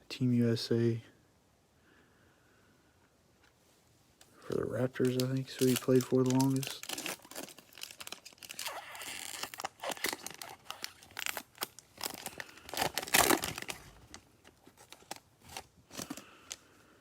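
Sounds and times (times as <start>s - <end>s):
foil wrapper tearing and crinkling: 5.0s - 16.5s.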